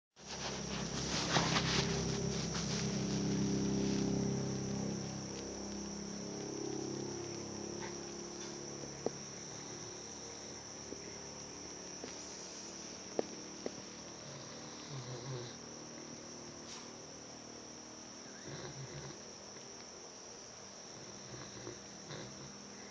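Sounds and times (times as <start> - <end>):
crickets chirring: 0.2 - 22.9
dog snoring: 0.3 - 11.2, 14.1 - 15.6, 18.3 - 19.2, 20.9 - 22.9.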